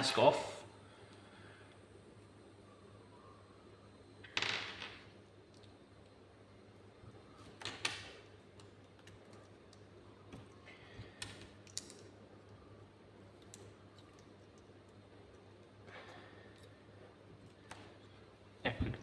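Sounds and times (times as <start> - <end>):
small plastic pieces clicking: 11.2 - 12.1.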